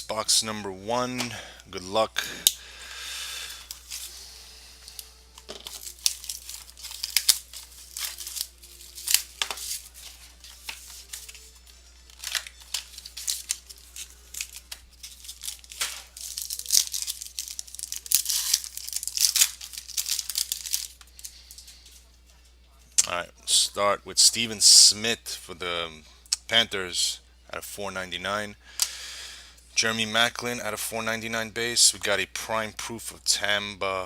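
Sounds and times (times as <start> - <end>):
plastic wrapping crinkling: 3.5 - 22.1.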